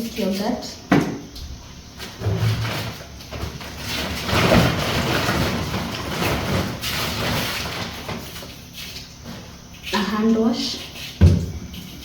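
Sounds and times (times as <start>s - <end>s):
plastic bag rustling: 2.0s - 8.6s.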